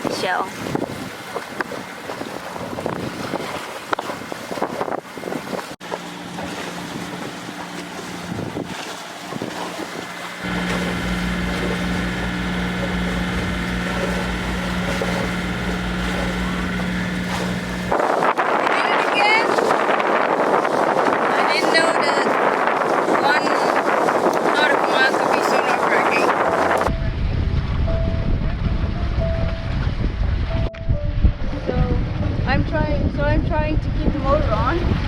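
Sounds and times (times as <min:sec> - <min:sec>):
wind buffeting microphone: 0:00.0 - 0:35.0
boat diesel engine running: 0:05.8 - 0:18.1, 0:24.6 - 0:27.0.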